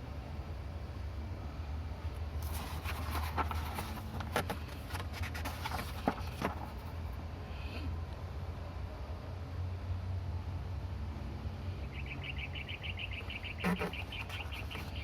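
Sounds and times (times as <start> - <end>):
paper pages rustling and turning: 2.4 - 7.0, 13.6 - 15.0.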